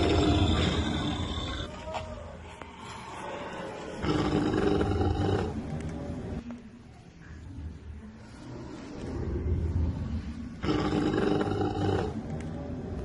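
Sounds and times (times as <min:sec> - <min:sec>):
dinosaur roar: 0:00.0 - 0:01.7, 0:03.0 - 0:06.2, 0:08.4 - 0:13.0.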